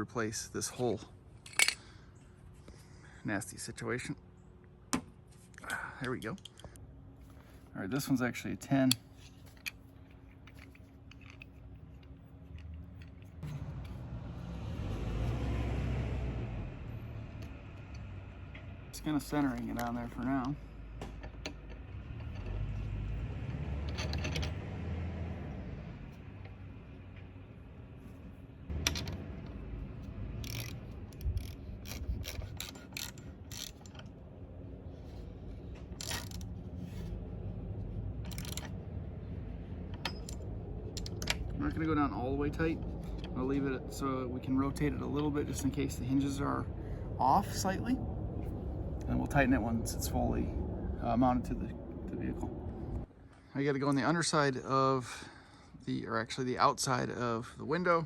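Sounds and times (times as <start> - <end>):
metal hardware clicking and tapping: 19.4 - 22.6, 39.9 - 42.0
low rumble: 21.8 - 53.2
ratchet wrench clicking: 30.3 - 34.1, 36.0 - 36.5, 38.3 - 38.7.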